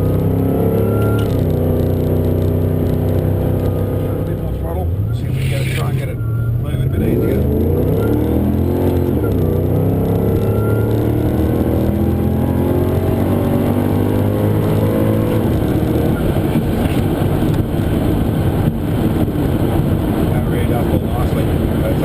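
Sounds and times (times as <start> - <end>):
car engine accelerating: 0.0 - 22.0.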